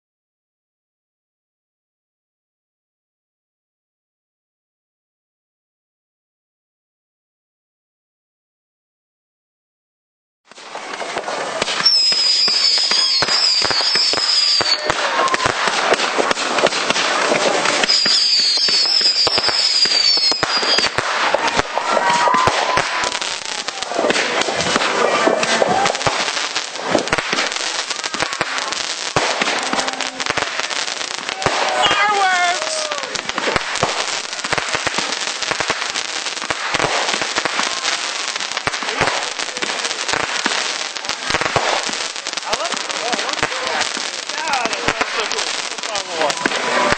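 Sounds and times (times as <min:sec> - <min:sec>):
fireworks hissing and crackling: 0:10.5 - 0:46.9
fireworks sharp pops: 0:10.5 - 0:46.9.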